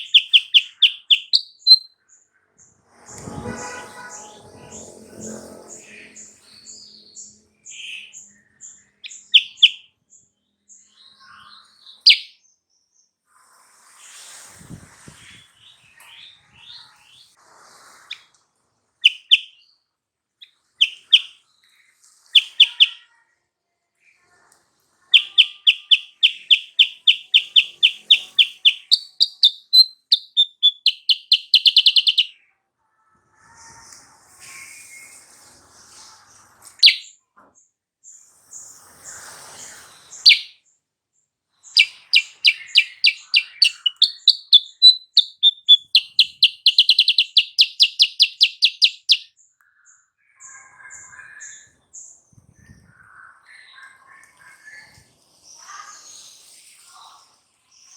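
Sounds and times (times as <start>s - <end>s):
bird chirping: 0.0s - 2.3s, 3.2s - 12.5s, 19.0s - 19.7s, 20.4s - 21.4s, 22.3s - 23.0s, 25.1s - 32.4s, 36.8s - 37.2s, 40.1s - 40.6s, 41.7s - 54.5s.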